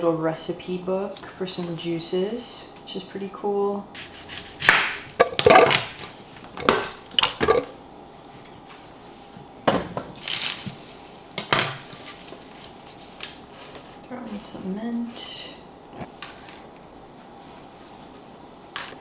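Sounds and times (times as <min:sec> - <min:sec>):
objects clattering on kitchen counter: 0:04.0 - 0:07.7.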